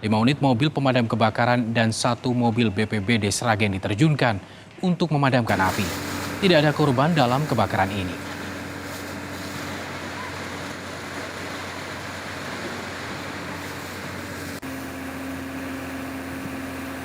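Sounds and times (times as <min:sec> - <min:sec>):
engine-like hum: 0:05.5 - 0:17.0.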